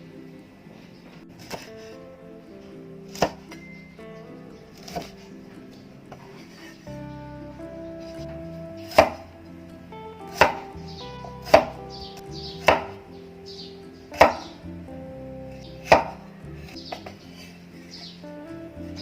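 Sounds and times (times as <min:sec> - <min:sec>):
knife chopping on cutting board: 0:12.7 - 0:12.9, 0:15.8 - 0:16.2.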